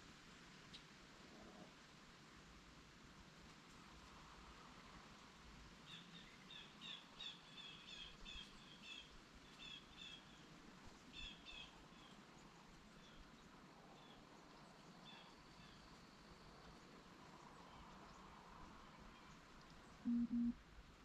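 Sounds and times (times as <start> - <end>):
faint songbird chirping: 5.8 - 20.6.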